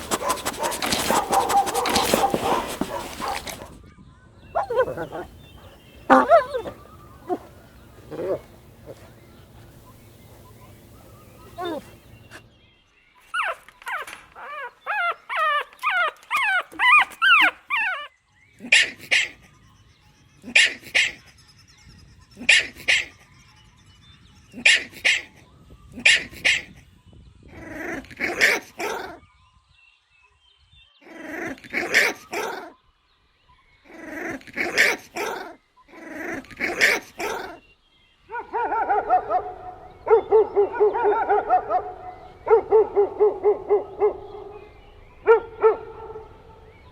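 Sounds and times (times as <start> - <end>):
puppy howling: 0.0 - 3.7, 4.6 - 12.4, 13.4 - 18.1
puppy barking: 0.0 - 3.8, 4.6 - 12.4, 13.4 - 18.1, 38.3 - 46.9
puppy whining: 0.0 - 3.8, 4.6 - 12.4, 13.4 - 18.1.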